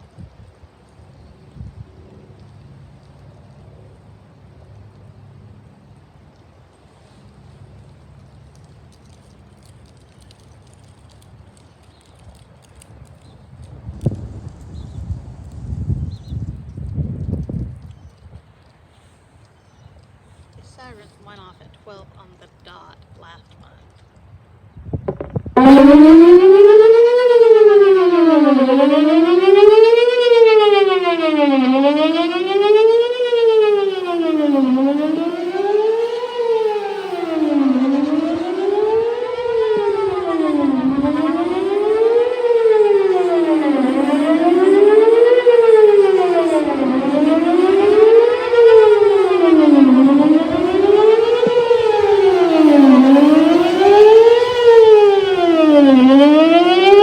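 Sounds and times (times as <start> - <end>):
warning siren wailing: 25.1 - 57.0.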